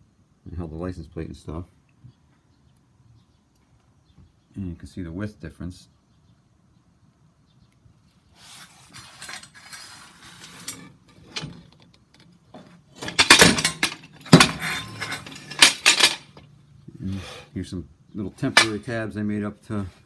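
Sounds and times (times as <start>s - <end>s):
metal scraping and rustling: 8.4s - 16.5s, 18.4s - 19.0s
metal parts clanking: 8.5s - 11.8s, 12.6s - 16.4s, 18.4s - 18.9s.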